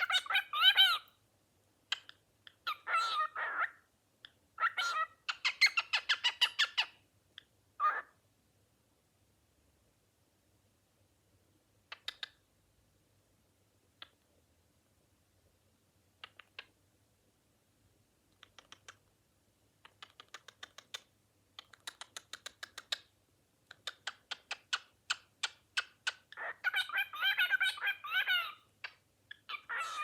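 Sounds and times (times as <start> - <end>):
bird making sharp clicks: 16.2 - 16.7, 18.4 - 19.0, 19.8 - 23.1.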